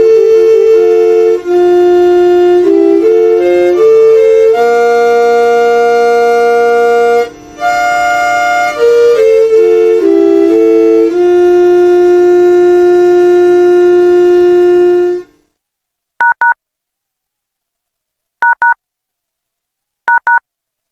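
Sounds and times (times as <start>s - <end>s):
short two-tone beeps: 16.2s - 16.6s, 18.4s - 18.8s, 20.1s - 20.4s.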